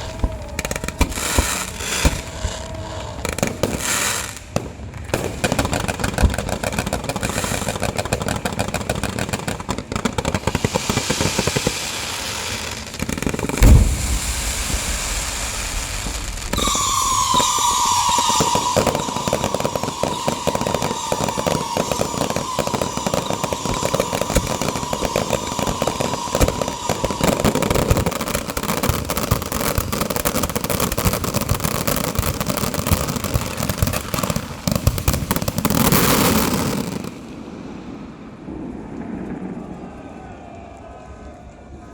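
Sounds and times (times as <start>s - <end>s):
firecrackers crackling: 0.0s - 40.0s
high whistling tone: 13.6s - 28.1s.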